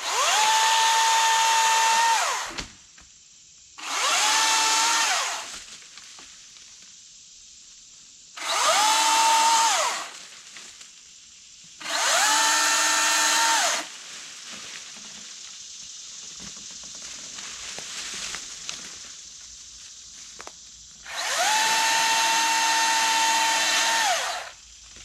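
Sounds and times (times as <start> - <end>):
electric chainsaw motor whining: 0.0 - 2.6, 3.8 - 5.5, 8.4 - 10.2, 11.8 - 13.9, 21.0 - 24.6.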